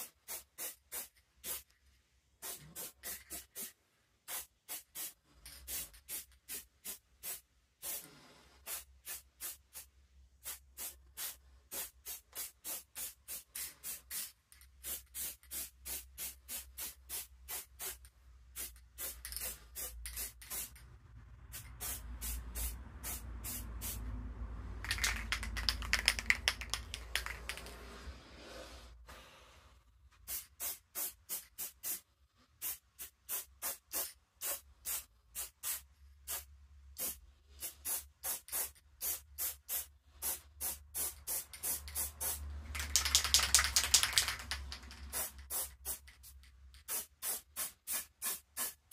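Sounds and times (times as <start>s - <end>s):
spray can rattling: 10.4s - 20.8s, 24.8s - 27.8s, 37.8s - 48.8s.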